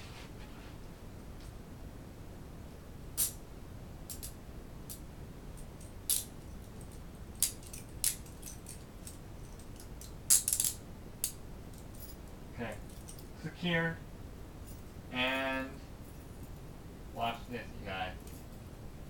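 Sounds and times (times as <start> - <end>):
handcuffs clicking and clinking: 4.1 - 4.4, 5.8 - 12.2, 12.9 - 13.3.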